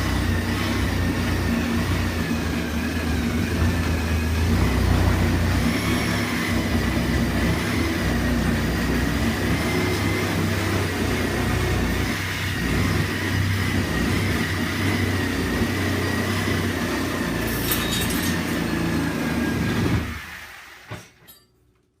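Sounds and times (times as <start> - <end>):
reciprocating saw cutting: 0.0 - 20.8.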